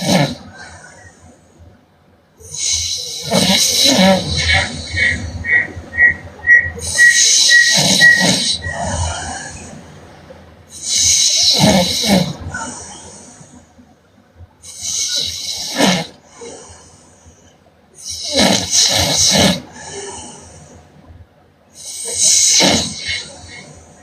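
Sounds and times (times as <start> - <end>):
woman snoring: 0.0 - 0.8, 2.4 - 5.0, 7.2 - 9.6, 10.8 - 12.9, 14.7 - 16.2, 18.0 - 20.4, 21.8 - 23.7
soft breath: 0.0 - 6.1, 6.7 - 14.0, 16.2 - 18.4, 19.2 - 21.2.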